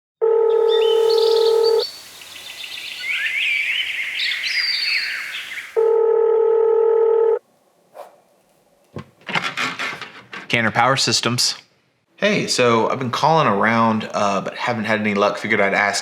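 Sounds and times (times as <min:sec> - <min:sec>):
telephone ringback tone: 0:00.2 - 0:01.8, 0:05.8 - 0:07.4
birds chirping: 0:00.5 - 0:05.8.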